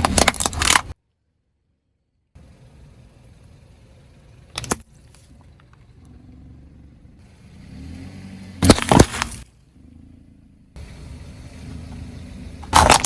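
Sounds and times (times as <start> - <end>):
sharp cracks and crunches: 0.0 - 1.0, 8.6 - 9.5, 12.6 - 13.0
tyres crushing objects: 0.0 - 1.0, 8.6 - 9.5, 12.6 - 13.0
car engine rumble: 2.4 - 13.0.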